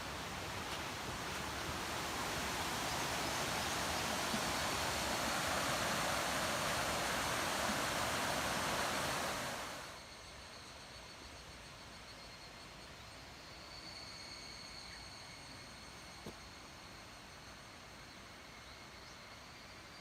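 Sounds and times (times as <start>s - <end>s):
mountain stream rushing: 0.0s - 10.0s.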